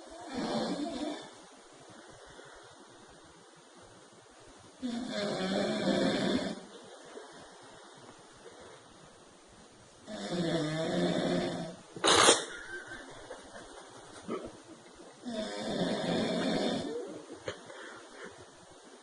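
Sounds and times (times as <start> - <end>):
person snoring: 0.1 - 1.3, 4.8 - 6.7, 10.0 - 12.3, 15.2 - 17.9.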